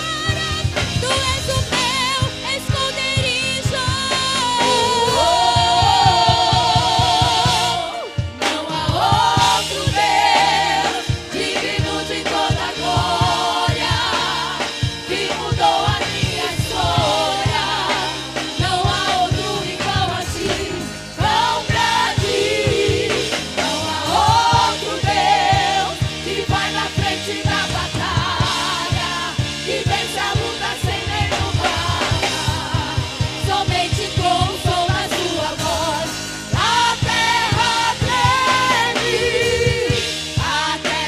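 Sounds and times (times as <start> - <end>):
steady drum beat: 0.0 - 41.0
vocal group singing with vibrato: 0.0 - 41.0.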